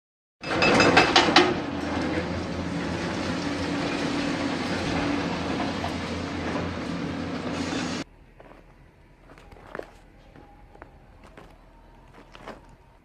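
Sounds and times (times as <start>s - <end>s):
heavy machinery engine rattling: 0.5s - 8.1s.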